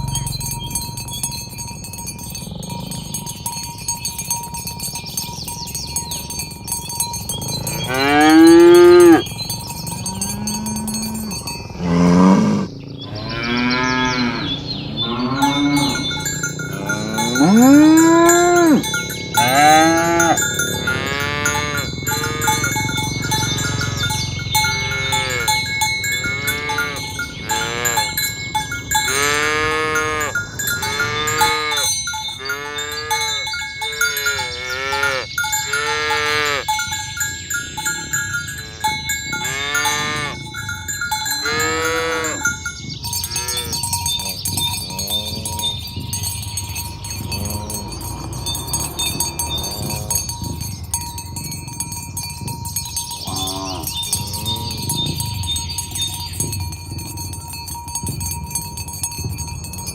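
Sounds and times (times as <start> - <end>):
cowbells ringing: 0.0 - 59.9
cattle mooing: 7.4 - 28.3, 29.0 - 36.7, 37.8 - 40.5, 41.4 - 42.6, 43.3 - 43.8, 47.2 - 50.3, 53.2 - 55.2.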